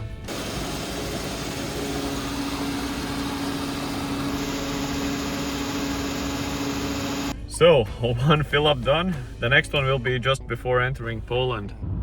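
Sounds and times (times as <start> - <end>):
fuel dispenser humming: 0.0 - 7.4
fuel rushing hiss: 0.0 - 7.4.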